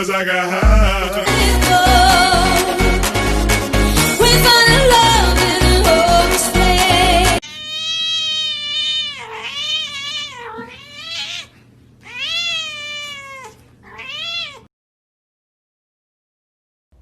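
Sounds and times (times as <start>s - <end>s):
cat yowling meows: 7.4s - 14.7s.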